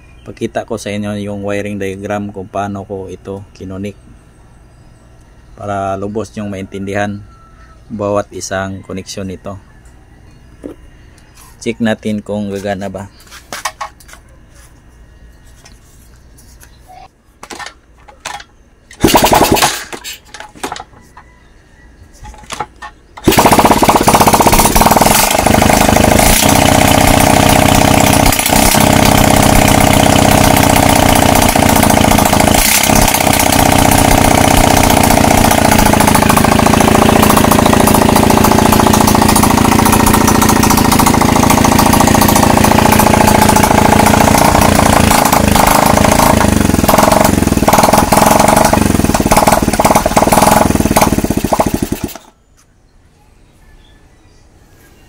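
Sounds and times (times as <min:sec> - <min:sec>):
motorcycle engine cranking: 0:17.4 - 0:20.9, 0:22.2 - 0:52.3
motorcycle engine running: 0:19.0 - 0:19.9, 0:23.1 - 0:52.3.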